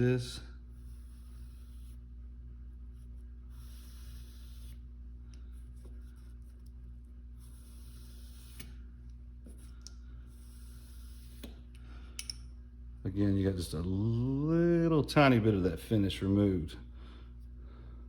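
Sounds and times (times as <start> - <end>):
steady low hum: 0.0 - 18.0
metal scratching on sandpaper: 3.0 - 4.8.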